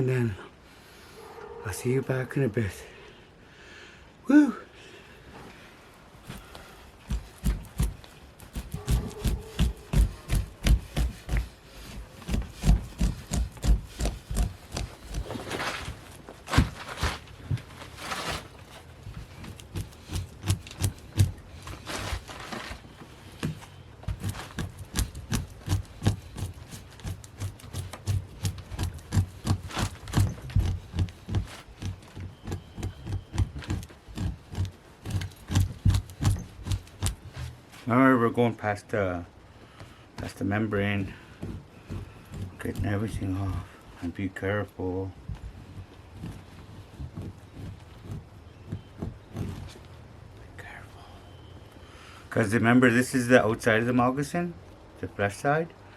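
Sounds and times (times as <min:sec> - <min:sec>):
fleshing tool scraping hide: 0:06.3 - 0:38.0, 0:40.2 - 0:43.8, 0:44.7 - 0:50.0.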